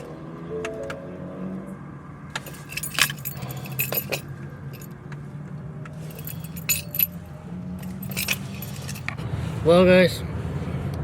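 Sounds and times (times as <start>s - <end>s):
keys jangling: 2.4s - 5.0s, 6.0s - 7.2s, 7.8s - 9.2s.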